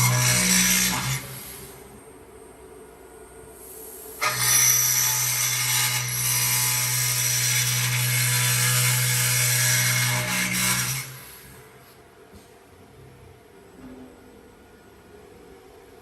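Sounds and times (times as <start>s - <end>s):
cnc machine cutting metal: 0.0s - 1.7s, 4.2s - 11.6s.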